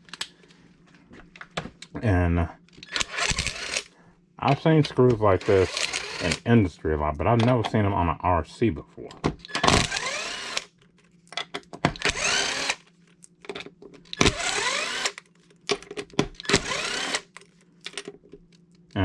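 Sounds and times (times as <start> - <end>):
cordless drill whining: 2.8 - 3.9, 5.4 - 6.4, 9.5 - 10.6, 12.0 - 12.8, 14.1 - 15.2, 16.4 - 17.3.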